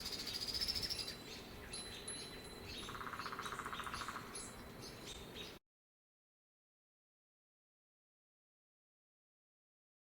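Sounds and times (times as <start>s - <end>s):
rapid bird trill: 0.0s - 5.6s.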